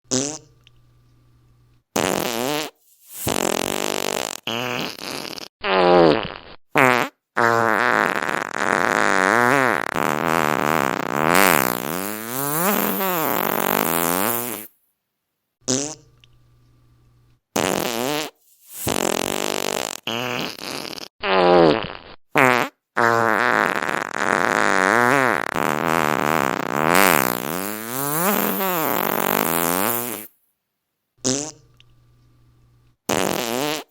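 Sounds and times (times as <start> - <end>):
fart sounds: 0.1 - 0.7, 2.0 - 14.7, 15.6 - 16.1, 17.6 - 30.4, 31.2 - 31.8, 33.1 - 33.9.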